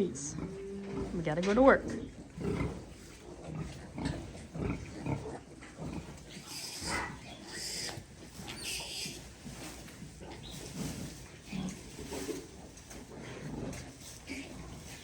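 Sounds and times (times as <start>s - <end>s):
sow grunting: 3.5s - 9.3s.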